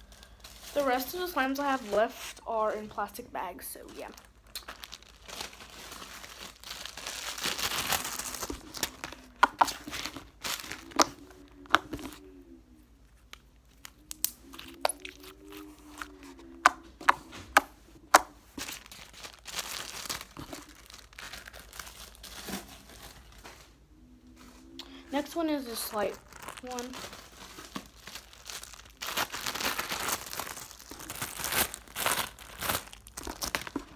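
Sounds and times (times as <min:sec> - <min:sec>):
plastic bag crinkling: 0:00.0 - 0:12.2, 0:18.5 - 0:23.6, 0:25.1 - 0:33.9.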